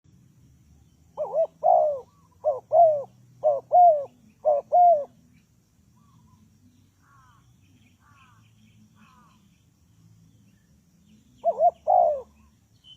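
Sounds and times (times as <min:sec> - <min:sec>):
dove cooing: 0:01.2 - 0:05.2, 0:11.4 - 0:12.5.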